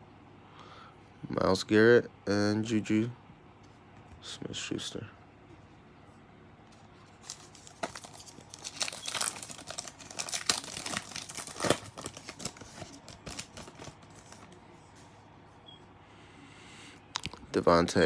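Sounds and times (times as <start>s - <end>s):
foil wrapper tearing and crinkling: 7.2s - 14.6s.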